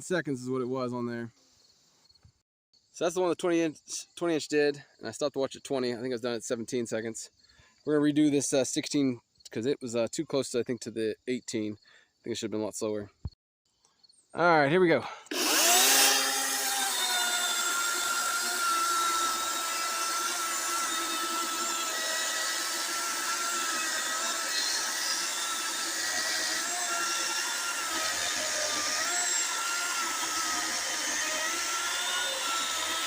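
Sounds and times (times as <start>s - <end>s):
electric chainsaw cutting log: 15.3s - 33.0s.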